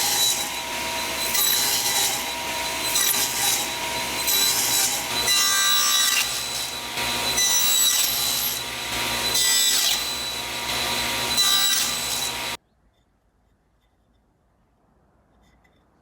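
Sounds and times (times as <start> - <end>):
hand saw cutting wood: 0.0 - 12.6.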